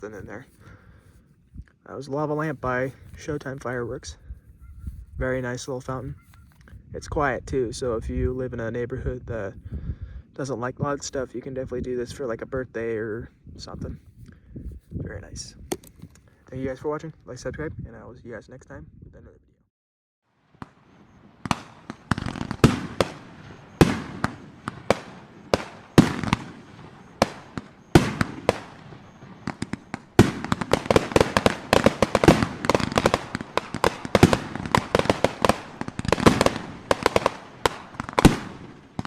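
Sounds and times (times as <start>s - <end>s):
fireworks crackling: 20.4s - 39.0s.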